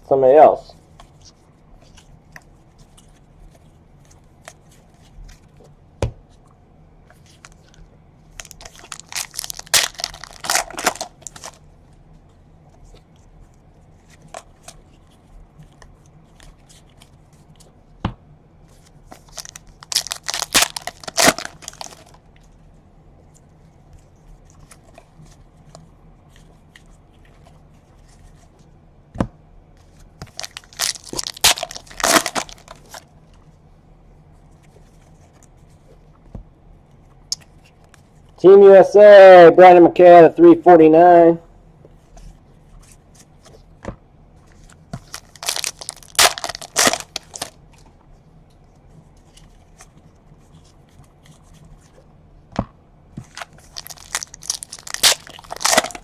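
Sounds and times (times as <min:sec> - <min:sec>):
card pack wrapper tearing: 0:08.4 - 0:11.6, 0:19.2 - 0:22.2, 0:30.2 - 0:33.0, 0:45.0 - 0:47.6, 0:53.3 - 0:56.0.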